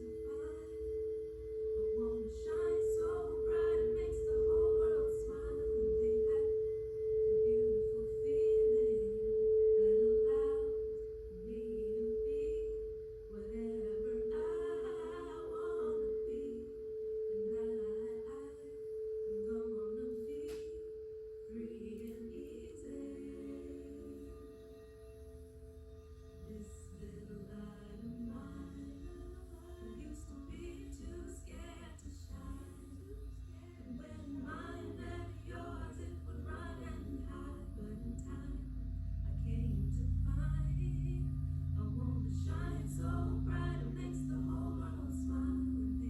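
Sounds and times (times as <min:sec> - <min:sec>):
faint wavering melody: 0:00.0 - 0:46.0
singing bowl ringing: 0:00.0 - 0:46.0.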